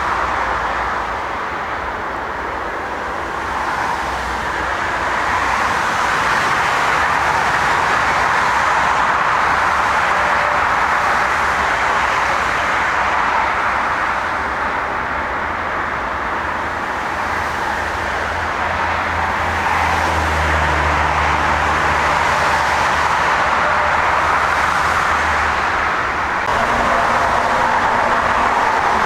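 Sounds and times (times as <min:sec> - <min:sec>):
jet engines rushing: 0:22.2 - 0:29.0
low hum: 0:26.4 - 0:29.0.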